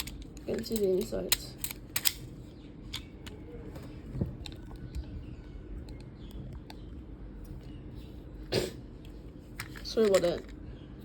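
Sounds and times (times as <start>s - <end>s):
small plastic parts clicking: 0.0s - 2.3s, 9.6s - 10.6s
low steady hum: 0.0s - 11.0s.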